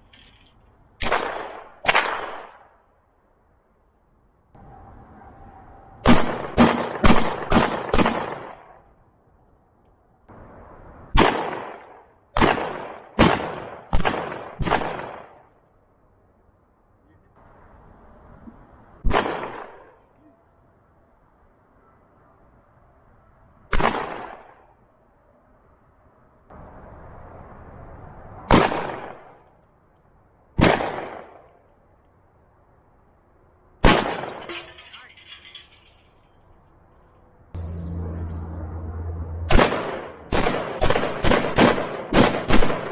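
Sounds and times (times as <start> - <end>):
gunshots with echo: 6.0 - 8.6, 39.5 - 42.9.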